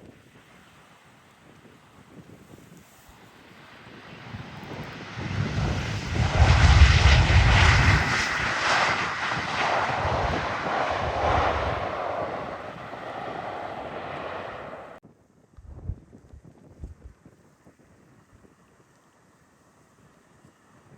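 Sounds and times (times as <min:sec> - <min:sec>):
airliner engines roaring overhead: 0:03.5 - 0:15.0.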